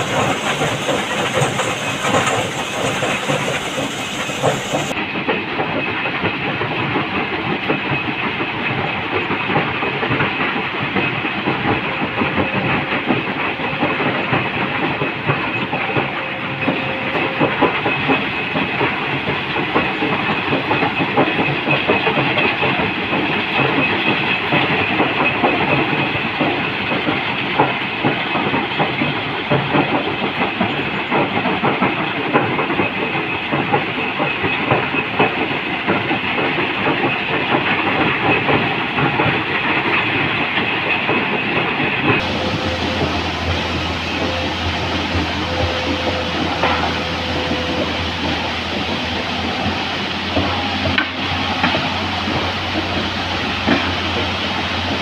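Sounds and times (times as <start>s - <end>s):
machinery hiss: 0.0s - 5.0s, 42.2s - 55.0s.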